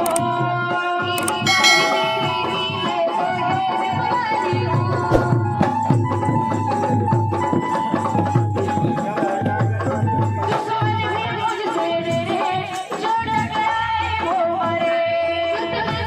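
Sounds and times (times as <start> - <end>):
held melodic line: 1.3 - 3.0
hand drums beating: 1.3 - 3.1
bright ringing strike: 1.5 - 2.9.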